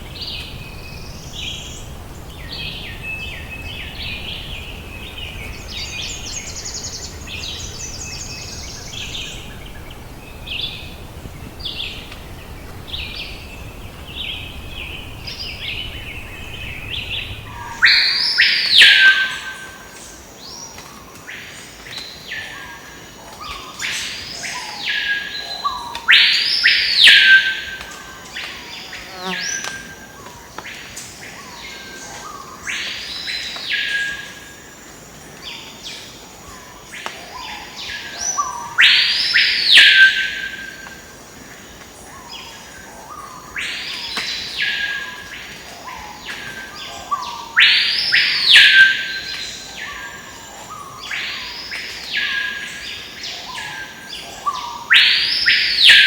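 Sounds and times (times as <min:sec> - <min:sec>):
high insect whine: 0:00.0 - 0:20.2.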